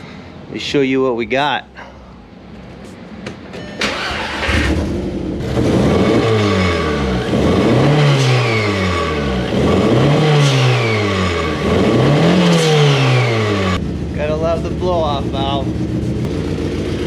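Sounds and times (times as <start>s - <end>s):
car engine revving: 0.0s - 17.0s
turbo whistle and blow-off venting: 3.8s - 13.8s.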